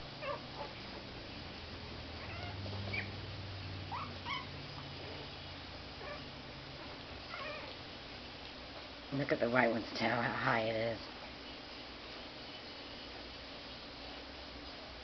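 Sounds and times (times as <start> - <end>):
low steady hum: 0.0 - 15.0
puppies squeaking and whimpering: 0.2 - 0.8, 2.2 - 3.2, 3.9 - 5.3, 6.0 - 7.8.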